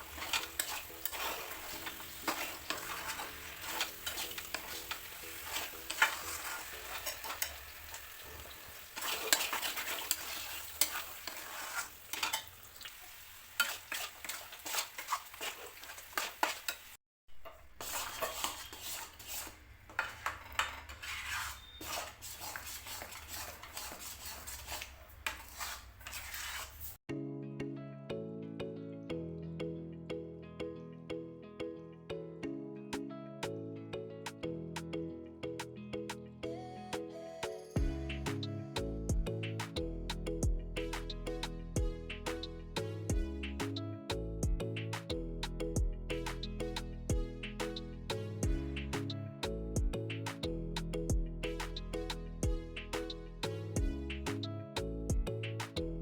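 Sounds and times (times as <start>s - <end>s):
food sizzling in a pan: 0.0s - 27.0s
spoon scraping a pan: 0.0s - 27.0s.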